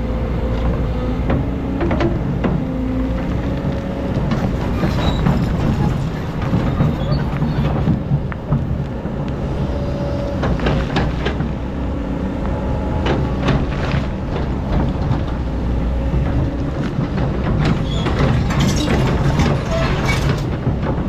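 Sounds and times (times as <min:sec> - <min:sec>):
excavator diesel engine running: 0:00.0 - 0:21.0
metallic clanks and knocks: 0:04.2 - 0:08.8, 0:16.1 - 0:21.0.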